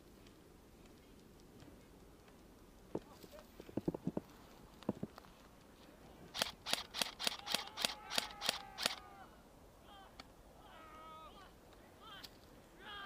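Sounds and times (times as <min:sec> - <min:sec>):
airsoft gun cracks: 0:06.3 - 0:09.0.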